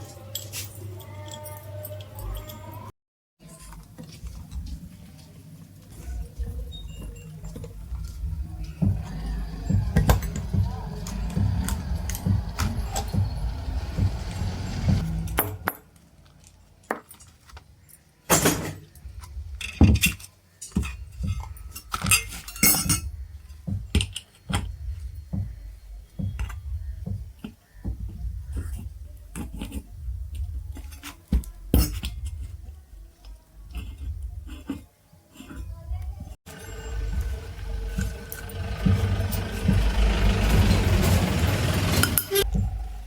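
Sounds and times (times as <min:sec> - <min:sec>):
low steady hum: 0:03.8 - 0:16.8, 0:35.9 - 0:43.0
metal tools clinking and tapping: 0:19.6 - 0:24.6.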